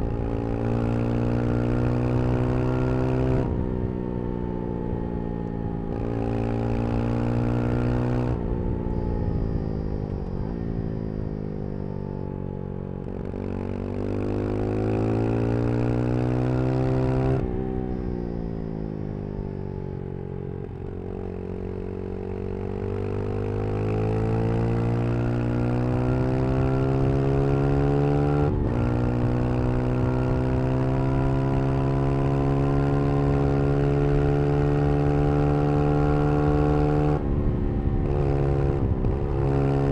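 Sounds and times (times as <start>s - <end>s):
motorcycle engine revving: 13.0s - 19.9s, 20.5s - 39.9s.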